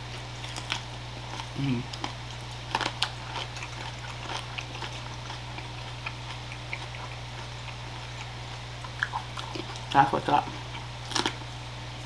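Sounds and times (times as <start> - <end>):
person chewing food: 0.0 - 12.0
steady low hum: 0.0 - 12.0.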